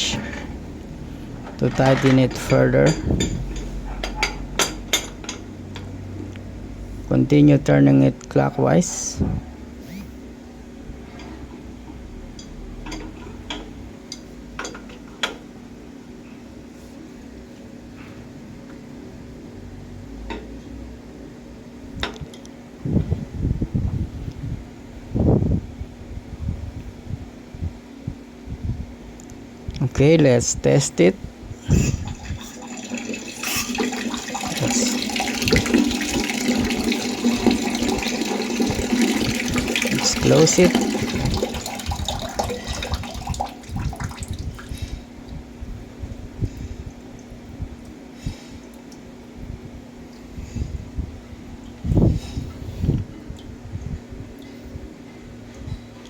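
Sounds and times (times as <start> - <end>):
water running from faucet: 32.0 - 44.6.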